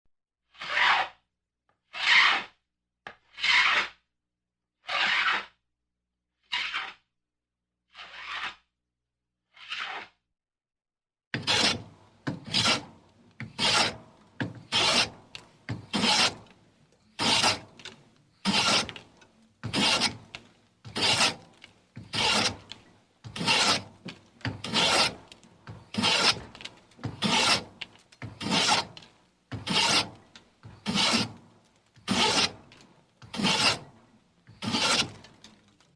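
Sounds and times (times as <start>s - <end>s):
hand plane shaving wood: 0.5s - 1.2s, 1.8s - 2.6s, 3.3s - 4.0s, 4.8s - 5.6s, 6.4s - 7.0s, 7.9s - 8.7s, 9.5s - 10.2s, 11.4s - 35.8s.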